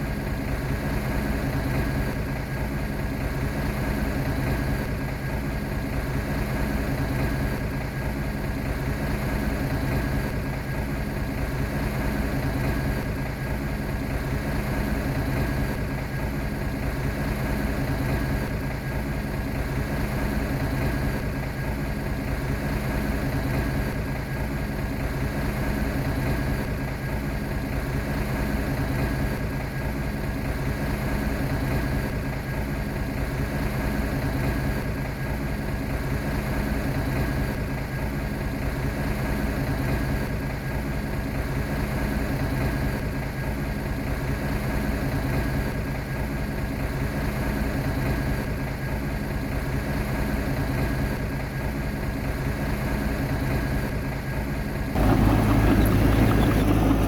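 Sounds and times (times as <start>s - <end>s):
bulldozer diesel engine running: 54.3s - 57.0s.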